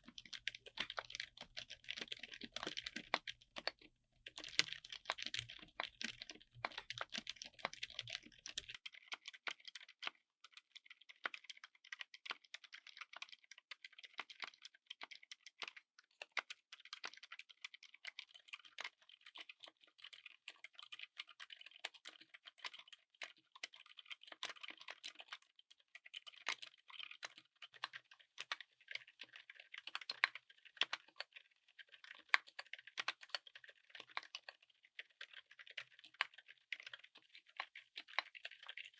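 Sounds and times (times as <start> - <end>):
fast typing on keyboard: 0.0 - 10.1, 10.8 - 38.9.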